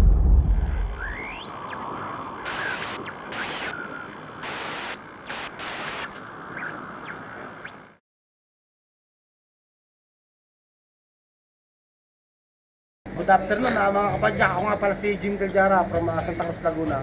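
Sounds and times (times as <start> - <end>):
deep boom: 0.0 - 1.4
rising whooshes: 0.0 - 3.0
static-like hiss: 0.6 - 8.0.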